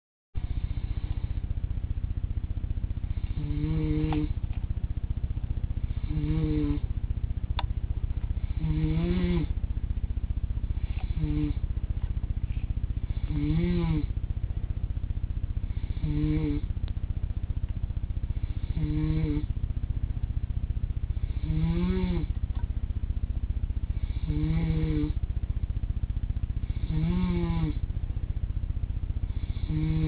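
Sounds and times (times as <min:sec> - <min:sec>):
buzzing snores: 0:00.4 - 0:01.4, 0:03.0 - 0:04.5, 0:05.8 - 0:07.0, 0:08.4 - 0:09.6, 0:10.7 - 0:14.2, 0:15.6 - 0:16.7, 0:18.2 - 0:19.6, 0:21.0 - 0:22.4, 0:23.9 - 0:25.2, 0:26.6 - 0:27.8, 0:29.2 - 0:30.0
steady low rumble: 0:00.4 - 0:30.0.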